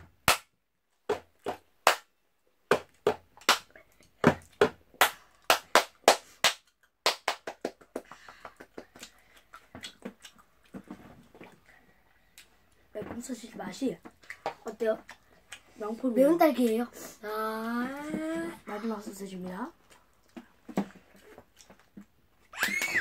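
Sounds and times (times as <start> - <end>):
child chewing and mouth-smacking: 2.9 - 5.5, 6.3 - 7.0, 7.8 - 13.0, 14.0 - 18.4, 19.7 - 22.9.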